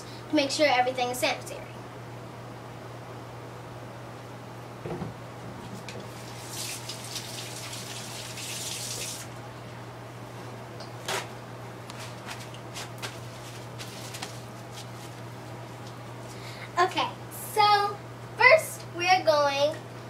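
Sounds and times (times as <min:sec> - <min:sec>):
hands washing under water: 0:06.1 - 0:09.3
water running from tap: 0:06.2 - 0:09.3.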